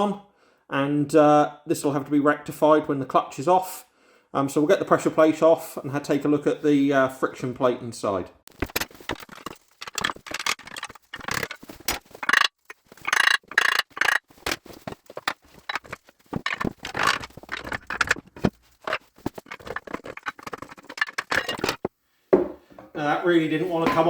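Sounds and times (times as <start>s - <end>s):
metal scraping and knocking: 8.8s - 22.9s.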